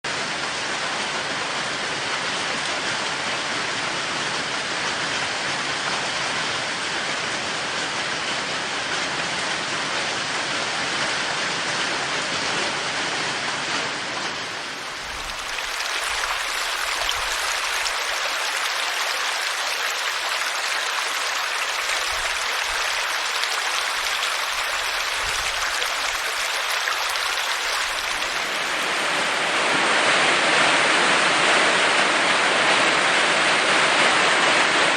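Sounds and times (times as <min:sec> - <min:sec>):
steady rain falling: 0:00.1 - 0:34.9
thin hissy running water: 0:14.4 - 0:29.8.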